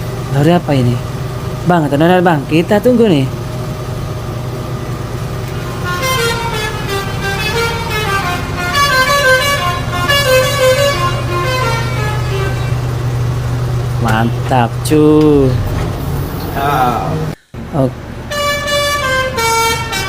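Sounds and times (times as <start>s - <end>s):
truck engine humming: 0.0s - 20.0s
multi-note musical truck horn: 5.5s - 13.6s, 18.2s - 20.0s.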